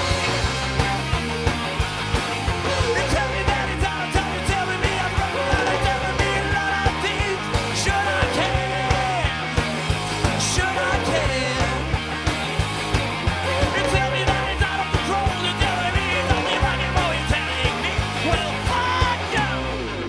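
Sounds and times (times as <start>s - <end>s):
live rock band playing: 0.0s - 20.0s.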